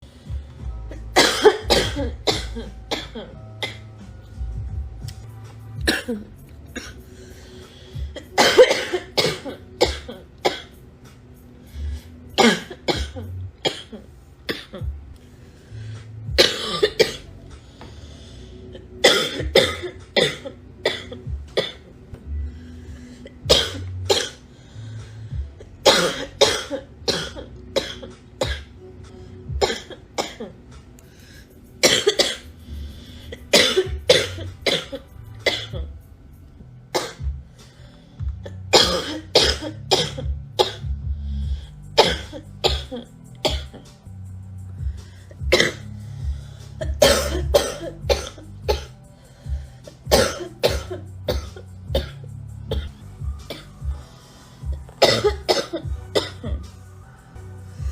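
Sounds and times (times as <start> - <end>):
girl coughing: 1.1 - 3.8, 5.9 - 7.0, 8.2 - 10.7, 12.4 - 14.9, 16.4 - 17.3, 19.0 - 21.8, 23.4 - 24.4, 25.8 - 28.7, 29.6 - 30.6, 31.8 - 32.4, 33.5 - 35.9, 38.4 - 40.9, 42.0 - 43.8, 45.5 - 45.8, 46.8 - 48.9, 50.1 - 52.9, 55.0 - 56.6.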